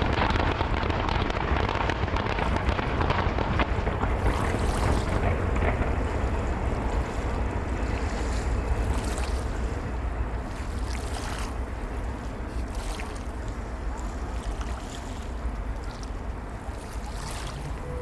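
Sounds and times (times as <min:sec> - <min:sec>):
fireworks crackles: 0:00.0 - 0:10.8
fireworks rumbling: 0:00.0 - 0:14.4.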